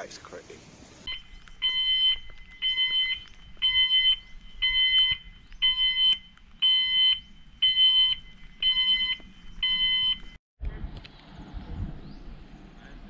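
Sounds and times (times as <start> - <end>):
electronic alarm beeping: 1.1 - 10.4.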